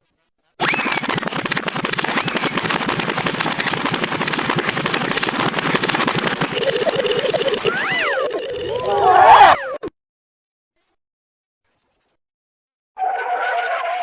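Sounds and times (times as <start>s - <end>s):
squeaky whistles falling in pitch: 0.6s - 1.1s
loud rattle of rapid pops: 0.6s - 7.8s.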